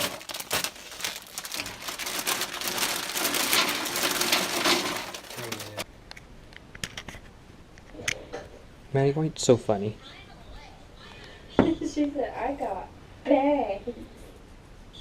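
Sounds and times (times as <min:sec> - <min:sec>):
plastic packaging crinkling: 0:00.0 - 0:05.9.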